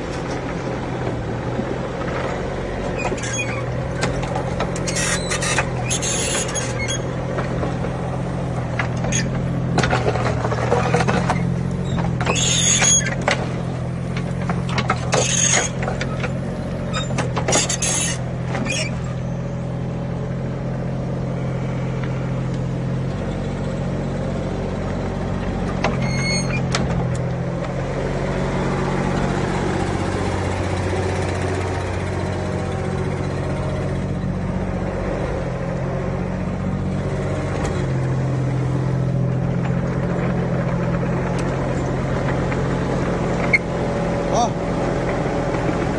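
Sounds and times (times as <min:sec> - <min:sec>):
diesel engine running: 0:00.0 - 0:45.9
high squeals: 0:04.8 - 0:07.2, 0:11.4 - 0:13.2, 0:26.0 - 0:26.7.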